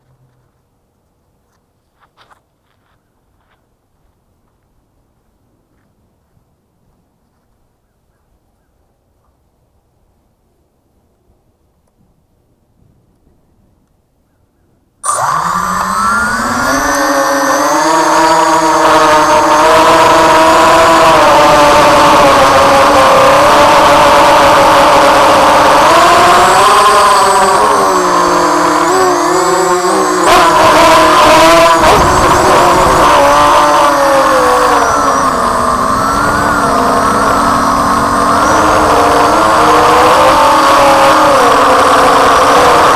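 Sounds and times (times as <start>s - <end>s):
quadcopter motors whining: 15.0s - 42.9s.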